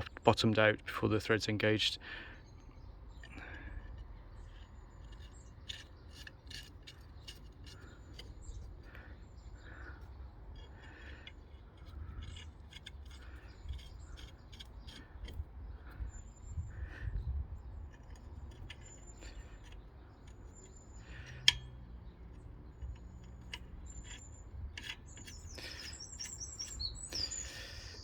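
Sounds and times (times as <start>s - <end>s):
metal bolts and tools clicking: 17.9s - 26.8s.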